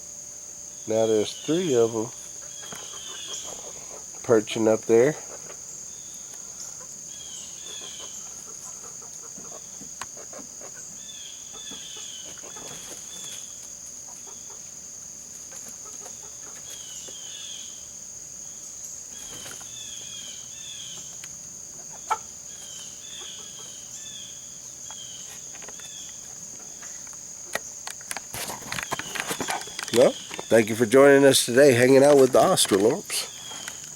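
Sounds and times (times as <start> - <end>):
insects droning: 0.0 - 33.9
bird chirping: 0.8 - 13.5, 28.7 - 33.9.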